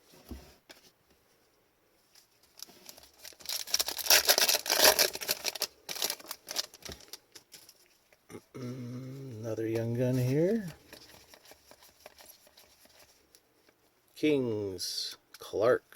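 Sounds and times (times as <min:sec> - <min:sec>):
foil wrapper tearing and crinkling: 0:02.6 - 0:07.7.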